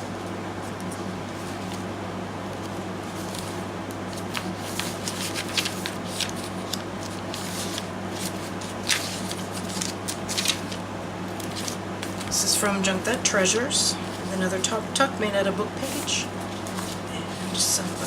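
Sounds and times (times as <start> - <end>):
steady low hum: 0.0 - 18.0
paper rustling and crinkling: 2.5 - 12.5, 15.8 - 18.0.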